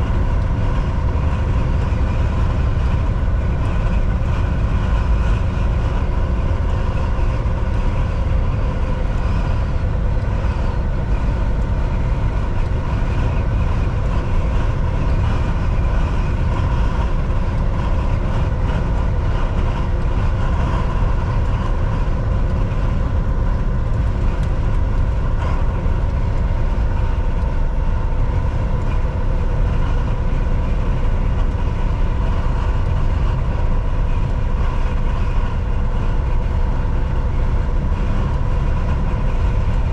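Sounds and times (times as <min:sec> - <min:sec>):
road and tyre rumble: 0:00.0 - 0:39.9
truck engine drone: 0:00.0 - 0:39.9.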